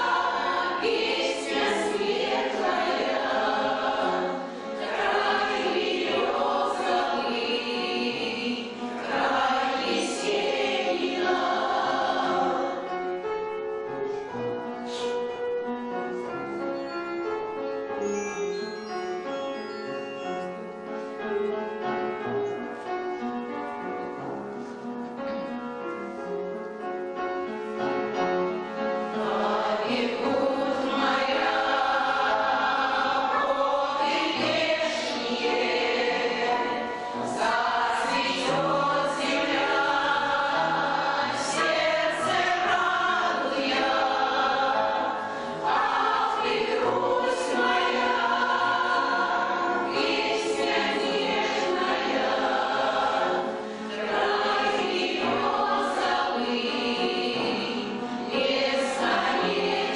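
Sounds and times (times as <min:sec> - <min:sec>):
choir singing: 0:00.0 - 0:13.1, 0:29.0 - 0:59.9
instrumental accompaniment: 0:00.0 - 0:59.9.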